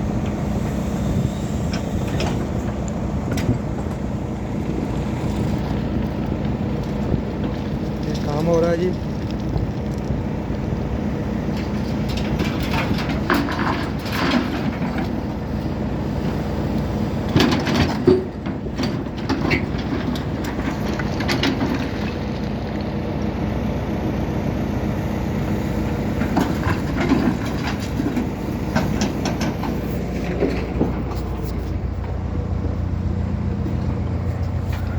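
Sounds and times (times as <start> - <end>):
diesel engine running: 0.0 - 34.9
metal clanks and knocks: 11.6 - 15.2, 17.3 - 22.3, 26.2 - 32.2.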